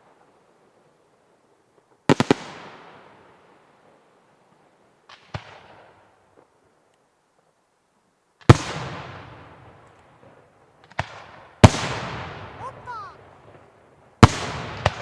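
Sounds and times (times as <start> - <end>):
small sharp firework pops: 5.1 - 6.5, 10.8 - 11.8.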